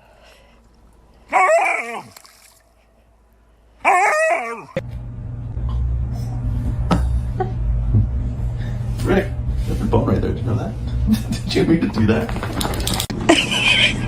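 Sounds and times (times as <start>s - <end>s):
dog crying: 1.3s - 2.1s, 3.8s - 4.8s
steady low hum: 2.6s - 14.0s.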